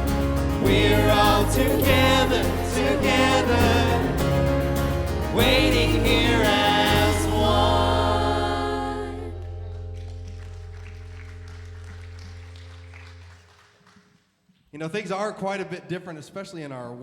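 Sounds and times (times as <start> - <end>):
voices singing: 0.0 - 9.6
band holding a chord: 0.0 - 12.7
deep bass note: 0.0 - 13.2.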